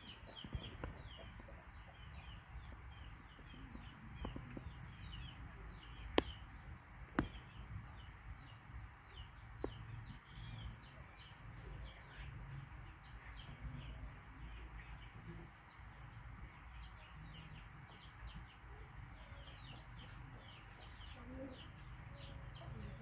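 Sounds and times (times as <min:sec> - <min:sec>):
small birds chirping: 0:00.0 - 0:23.0
sharp clicks: 0:07.1 - 0:07.5.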